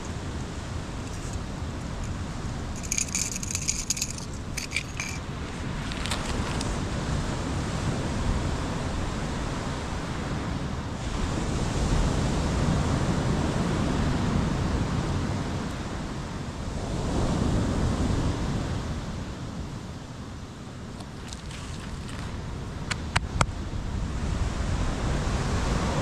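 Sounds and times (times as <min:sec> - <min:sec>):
ocean surf washing onto shore: 0:05.2 - 0:26.0.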